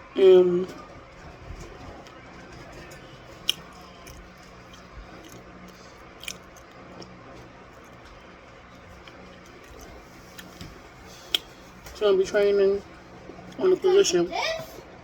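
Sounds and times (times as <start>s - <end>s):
squishy chewing crunch: 3.3s - 8.2s.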